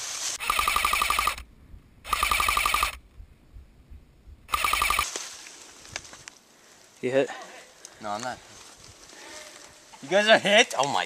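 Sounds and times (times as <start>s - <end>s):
airsoft gun full-auto bursts: 0.4s - 1.4s, 2.1s - 3.0s, 4.5s - 5.1s.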